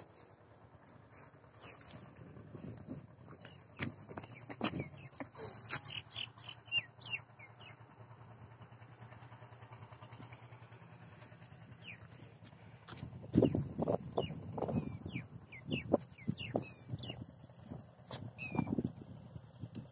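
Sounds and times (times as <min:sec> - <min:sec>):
low motor hum: 0:00.0 - 0:19.9
bird chirps: 0:03.4 - 0:07.8, 0:11.8 - 0:12.2, 0:13.4 - 0:17.3, 0:18.4 - 0:18.8.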